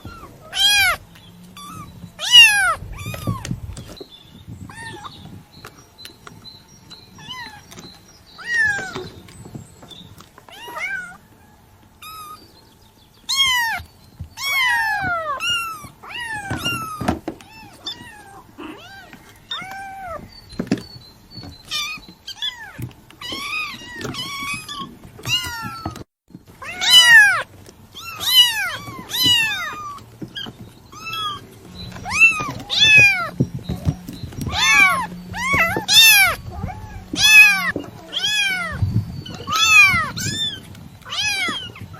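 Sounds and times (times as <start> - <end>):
kitten meowing: 0.0 - 1.0, 1.6 - 3.6, 4.6 - 5.3, 8.4 - 9.1, 10.5 - 11.2, 13.3 - 20.3, 26.6 - 41.9.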